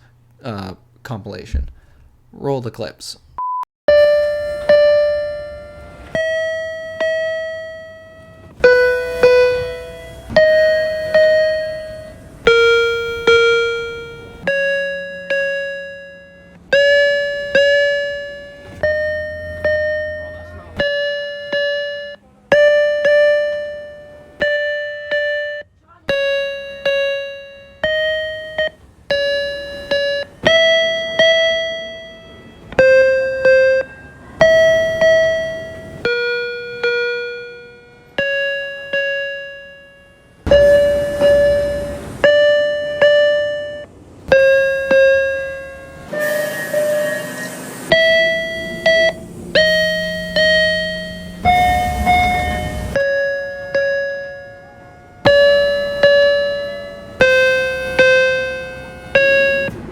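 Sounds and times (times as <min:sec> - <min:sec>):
electronic door chimes: 0:03.4 - 0:59.9
train running noise: 0:03.9 - 0:25.1, 0:39.9 - 0:59.9.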